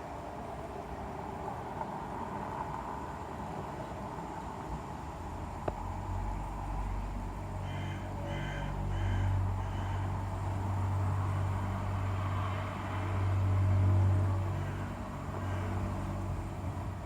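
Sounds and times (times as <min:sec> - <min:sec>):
low droning hum from sky: 0:00.0 - 0:17.0
crow cawing: 0:07.6 - 0:10.2, 0:14.5 - 0:16.2.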